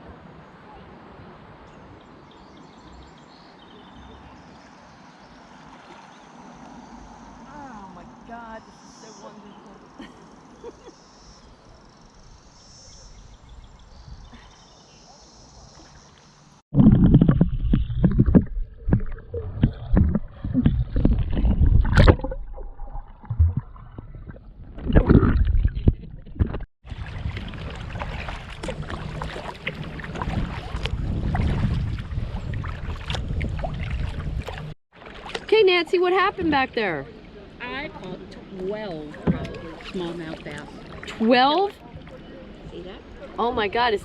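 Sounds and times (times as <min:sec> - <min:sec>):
paddle strokes in water: 0:04.0 - 0:07.4, 0:25.0 - 0:35.6, 0:38.2 - 0:42.6.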